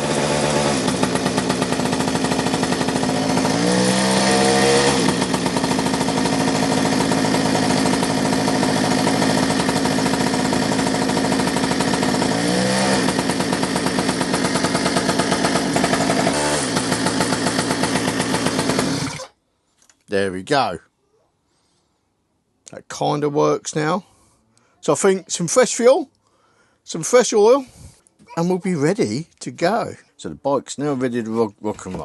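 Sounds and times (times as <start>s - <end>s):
two-stroke engine idling: 0.0s - 19.3s.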